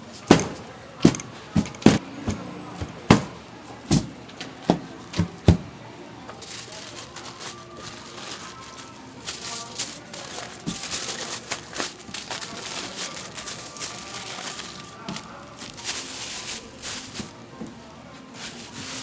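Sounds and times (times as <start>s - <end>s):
kitchen tools knocking: 0.3s - 5.6s.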